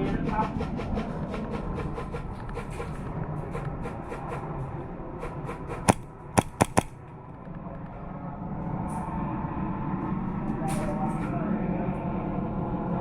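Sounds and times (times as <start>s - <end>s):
airsoft gun shots: 5.9s - 7.0s
faint clicks: 5.9s - 7.0s.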